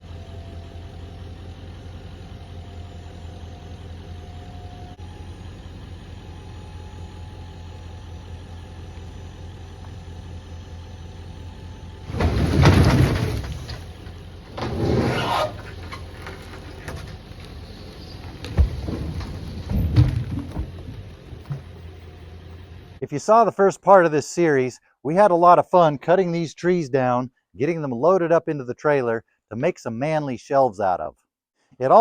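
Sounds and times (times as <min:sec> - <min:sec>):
engine humming: 0:00.0 - 0:23.0.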